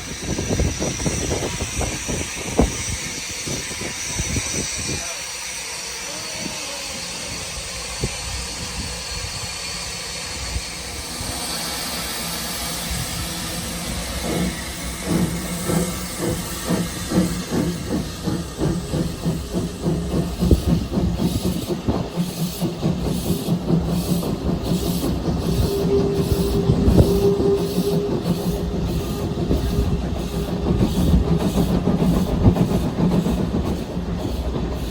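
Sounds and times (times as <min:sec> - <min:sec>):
steam locomotive hissing: 0:00.0 - 0:34.9
locomotive exhaust beats: 0:12.0 - 0:34.9.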